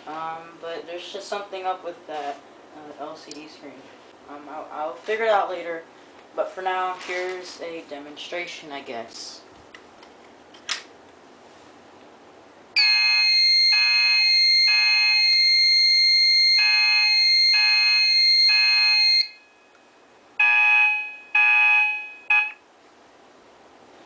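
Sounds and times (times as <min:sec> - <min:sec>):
pulsing fire alarm tone: 0:12.8 - 0:19.7, 0:20.4 - 0:22.6
steady high-pitched tone: 0:12.8 - 0:22.6.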